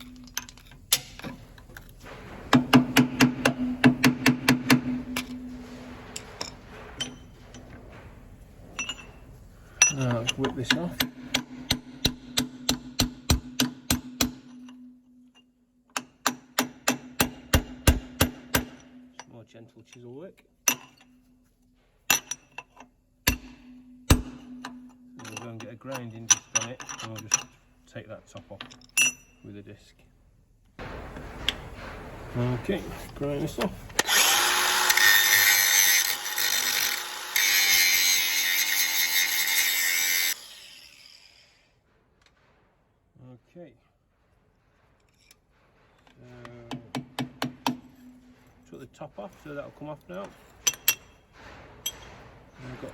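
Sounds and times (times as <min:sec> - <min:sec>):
hammer striking chisel on metal: 0:02.5 - 0:05.3, 0:09.8 - 0:14.9, 0:16.0 - 0:19.1, 0:46.7 - 0:48.2
grinding disc on steel bolt: 0:34.0 - 0:41.4.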